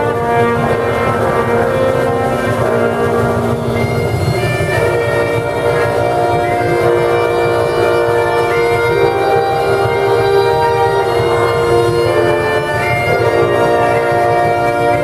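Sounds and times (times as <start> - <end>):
bagpipe playing a tune: 0.0 - 15.0.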